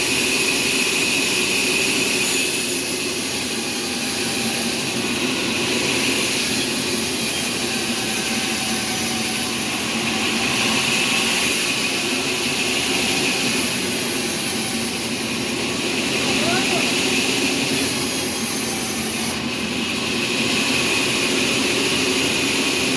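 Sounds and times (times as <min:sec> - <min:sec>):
sawmill machinery running: 0:00.0 - 0:22.9.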